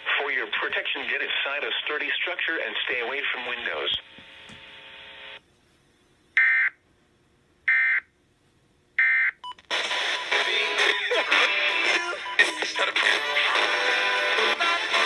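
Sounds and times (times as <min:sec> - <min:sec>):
music: 0:09.7 - 0:15.0.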